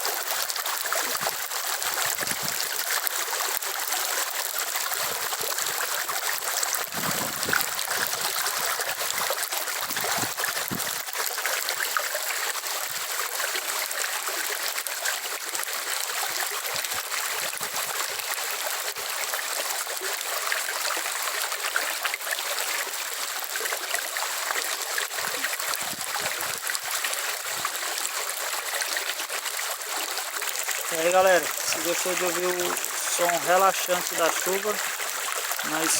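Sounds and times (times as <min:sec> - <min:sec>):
steady rain falling: 0:30.8 - 0:34.8, 0:35.6 - 0:35.9.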